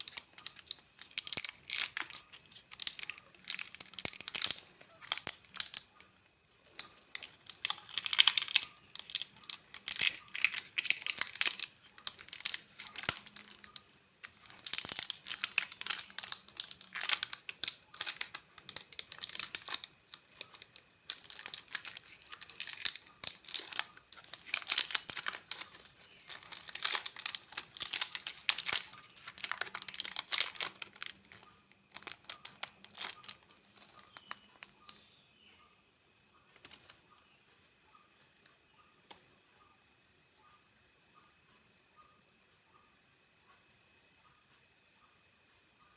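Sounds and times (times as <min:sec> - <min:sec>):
snack packaging crinkling: 0:00.0 - 0:06.0, 0:06.7 - 0:35.0.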